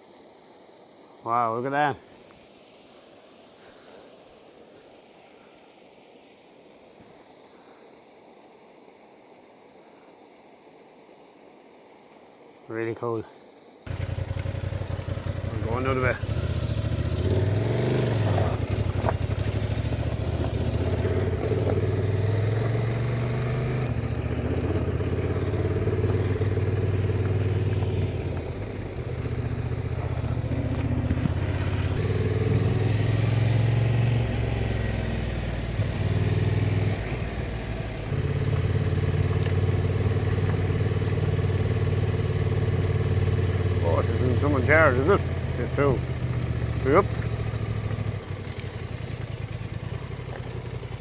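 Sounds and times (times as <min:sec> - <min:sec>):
motorcycle engine revving: 0:13.9 - 0:51.0.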